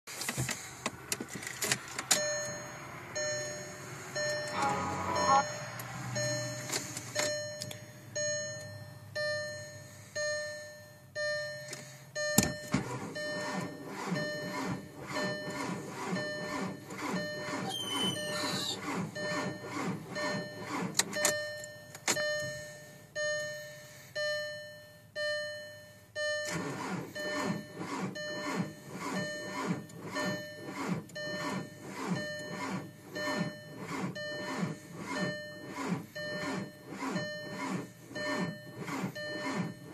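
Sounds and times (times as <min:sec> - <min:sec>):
car warning chime: 0:02.0 - 0:39.9
starter cranking diesel engine: 0:11.8 - 0:22.4, 0:26.4 - 0:39.9.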